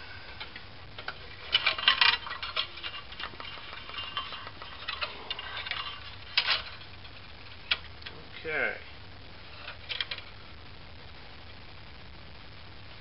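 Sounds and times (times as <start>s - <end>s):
blade rattling: 1.0s - 7.9s.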